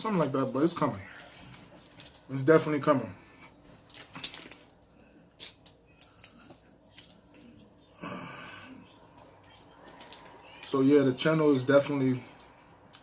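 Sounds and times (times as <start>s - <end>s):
wet eating sounds: 3.2s - 10.4s.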